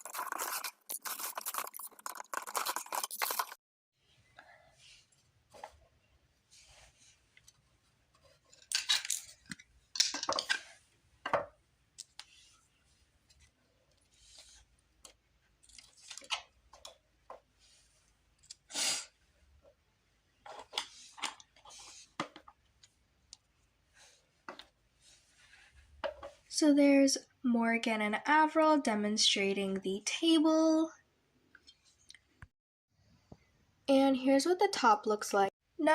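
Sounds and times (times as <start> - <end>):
packaging rustling: 0.0 - 3.6.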